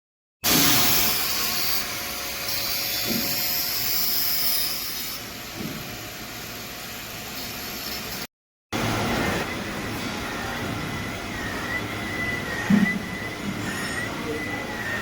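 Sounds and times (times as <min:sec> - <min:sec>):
lathe cutting metal hiss: 0:00.4 - 0:08.3.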